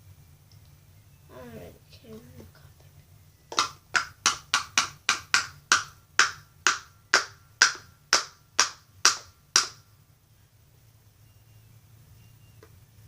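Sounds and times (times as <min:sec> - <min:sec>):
plastic bottle knocking: 0:03.5 - 0:09.8.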